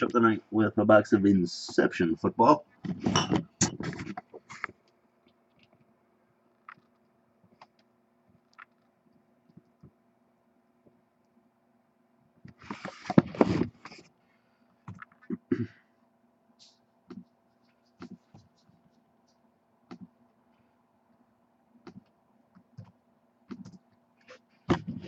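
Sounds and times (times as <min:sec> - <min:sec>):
keyboard and mouse clicks: 0:06.6 - 0:08.9, 0:19.9 - 0:20.1, 0:21.8 - 0:24.0.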